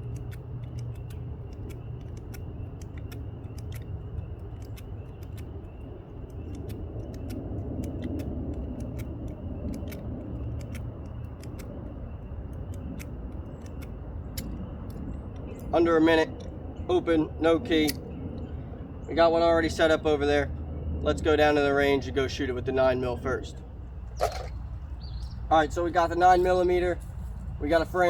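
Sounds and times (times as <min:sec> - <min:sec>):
lock-picking metal clicks: 0:00.0 - 0:18.6
steady low rumble: 0:00.0 - 0:28.0.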